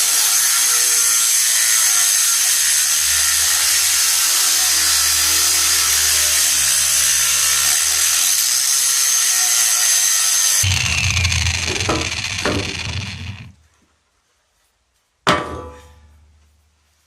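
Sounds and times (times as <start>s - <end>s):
angle grinder cutting steel: 0.0s - 13.6s.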